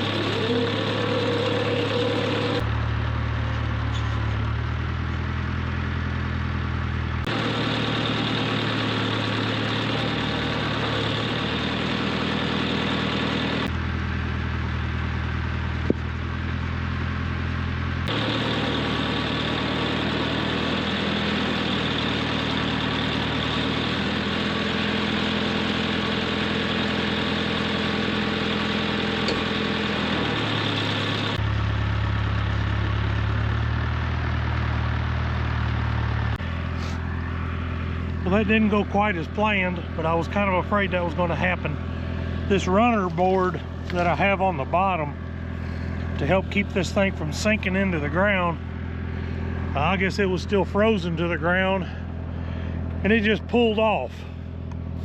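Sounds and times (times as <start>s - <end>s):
tractor engine running: 0.0s - 55.0s.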